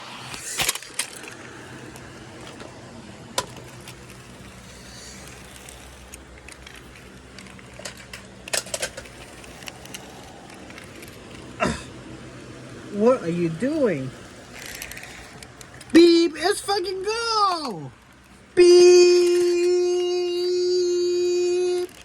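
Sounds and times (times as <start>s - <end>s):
car engine and road hum: 0.0s - 22.0s.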